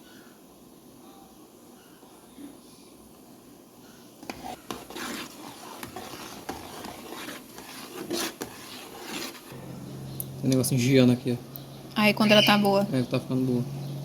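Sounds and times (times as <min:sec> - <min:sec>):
spoon scraping a pot: 0:04.2 - 0:09.6.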